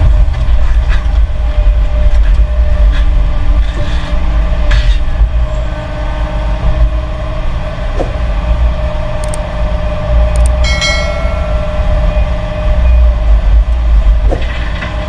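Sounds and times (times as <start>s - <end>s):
heavy diesel machinery rumbling: 0.0s - 15.0s
high metallic squeal: 10.6s - 13.2s.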